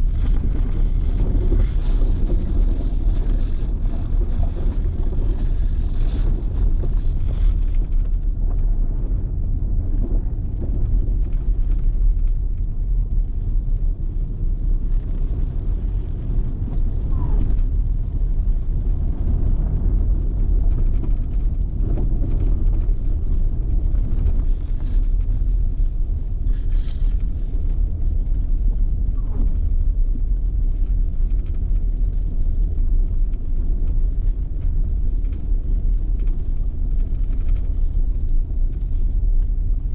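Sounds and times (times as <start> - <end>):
low vehicle rumble: 0.0 - 39.9
wind noise: 0.0 - 39.9.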